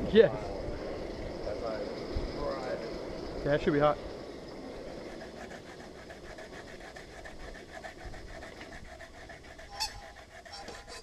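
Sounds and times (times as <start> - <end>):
hand file rasping: 4.9 - 11.0.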